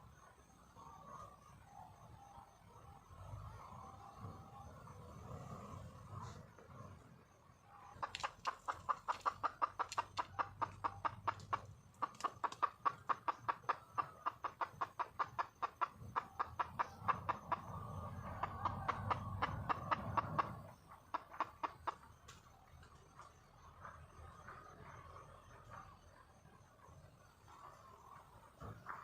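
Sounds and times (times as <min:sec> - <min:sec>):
junglefowl hen clucking: 0:07.9 - 0:22.6.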